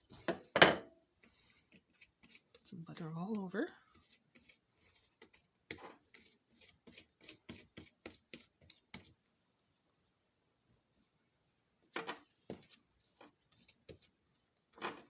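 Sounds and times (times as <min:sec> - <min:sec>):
knife spreading butter: 0:01.2 - 0:09.2, 0:12.1 - 0:15.0.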